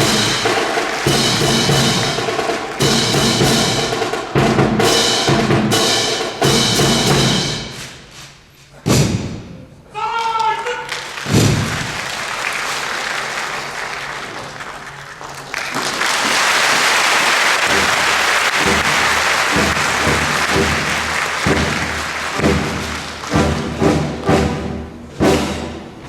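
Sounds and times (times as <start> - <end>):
audience applauding: 0.0 - 4.3, 10.3 - 24.4
military band drum beats: 0.0 - 8.1, 11.2 - 12.4, 16.2 - 26.0.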